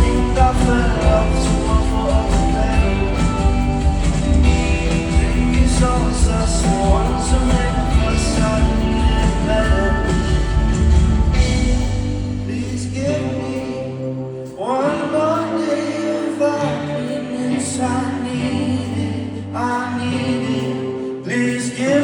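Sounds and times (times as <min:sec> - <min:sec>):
wordless vocal line: 0:00.0 - 0:11.6.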